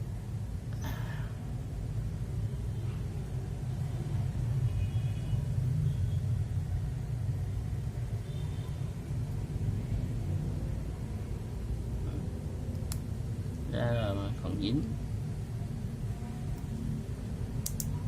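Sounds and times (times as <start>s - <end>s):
steady low rumble: 6.3s - 18.0s.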